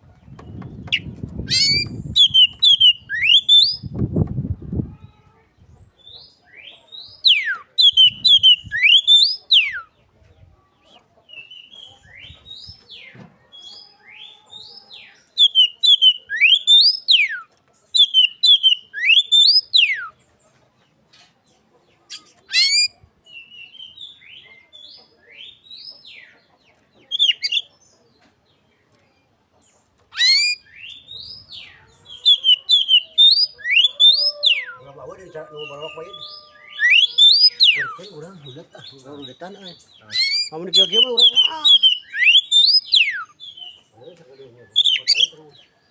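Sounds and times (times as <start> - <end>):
bird singing whistled notes: 0.9 - 4.5, 7.0 - 9.9, 15.4 - 20.2, 22.1 - 24.4, 30.1 - 34.9, 35.6 - 38.1, 38.8 - 43.8, 44.6 - 45.4.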